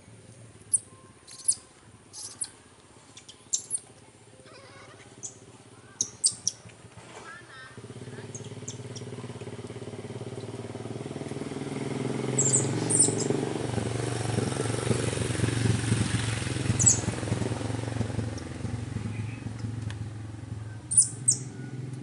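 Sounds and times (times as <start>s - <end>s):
motor engine running: 4.7s - 22.0s.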